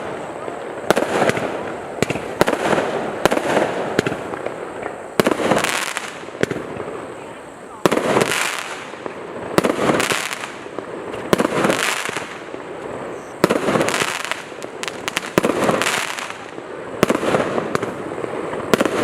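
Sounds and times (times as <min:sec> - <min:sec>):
firework hissing and crackling: 0:00.0 - 0:19.0
firework reports: 0:00.0 - 0:19.0.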